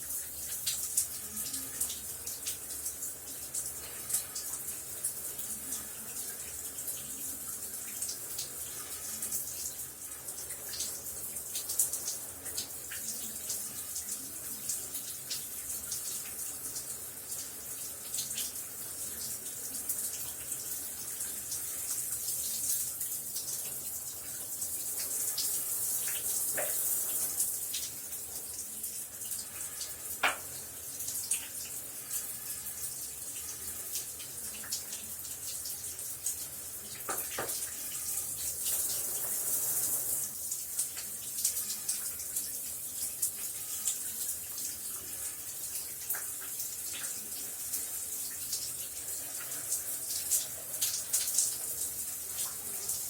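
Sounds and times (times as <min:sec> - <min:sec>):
water splashes and drips: 0:00.0 - 0:53.0
shower spray hissing: 0:08.0 - 0:45.4.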